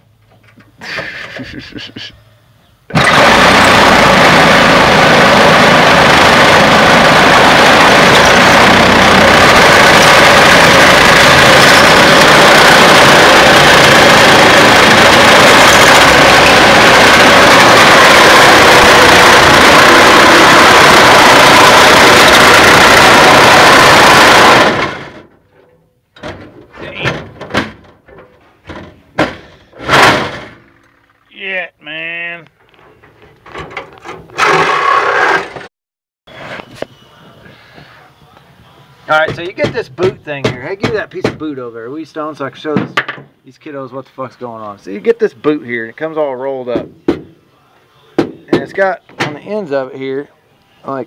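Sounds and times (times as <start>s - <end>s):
power saw cutting sheet metal: 2.9s - 25.3s, 34.3s - 35.7s.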